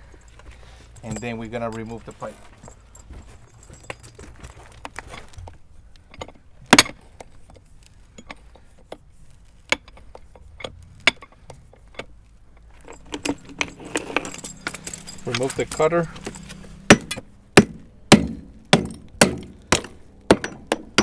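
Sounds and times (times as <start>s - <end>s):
metal snap cutter clinking: 12.8s - 17.3s.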